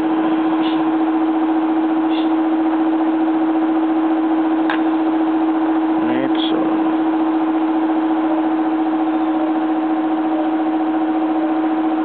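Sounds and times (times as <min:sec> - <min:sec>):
electric motor hum: 0:00.0 - 0:12.0.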